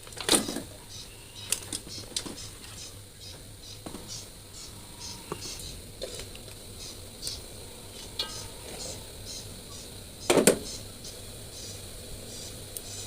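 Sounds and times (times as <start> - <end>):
faint sizzle: 0.0 - 13.0
utensil stirring and knocking pan: 8.0 - 9.0
loud cookware clatter: 8.1 - 9.0.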